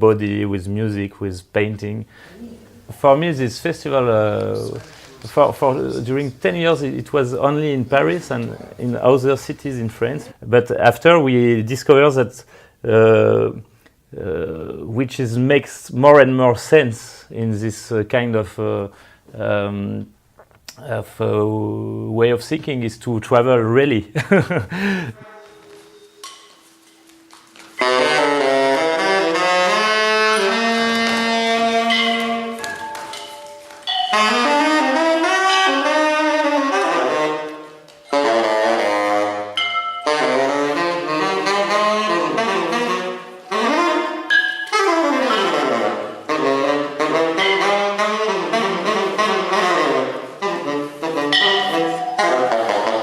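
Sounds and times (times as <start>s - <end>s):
saxophone playing jazz: 2.2s - 3.1s, 3.7s - 9.2s, 25.2s - 53.0s.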